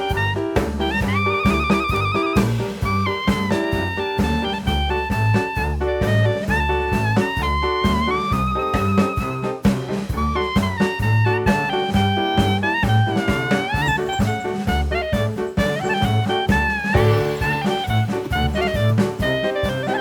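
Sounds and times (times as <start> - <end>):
jazz background music: 0.0 - 20.0.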